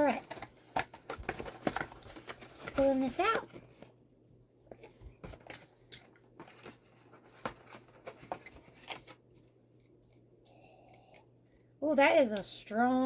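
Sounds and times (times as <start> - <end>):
packaging rustling: 0.0 - 3.8, 4.7 - 9.5
light clicks of box packaging: 0.1 - 3.9.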